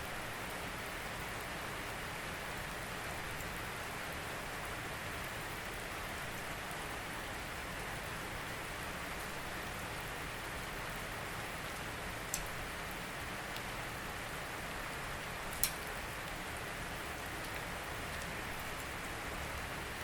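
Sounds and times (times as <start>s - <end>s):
steady rain falling: 0.0s - 20.0s
raindrops ticking: 12.1s - 13.8s, 15.3s - 19.6s.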